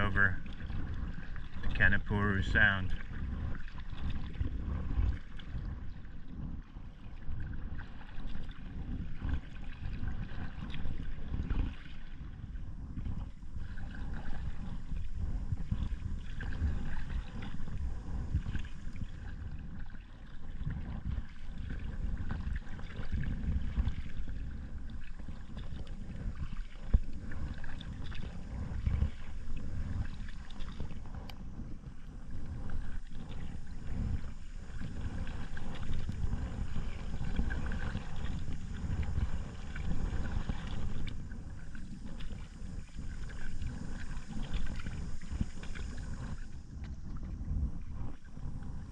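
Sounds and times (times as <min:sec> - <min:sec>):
low microphone rumble: 0:00.0 - 0:48.9
water swishing with paddle strokes: 0:00.0 - 0:48.9.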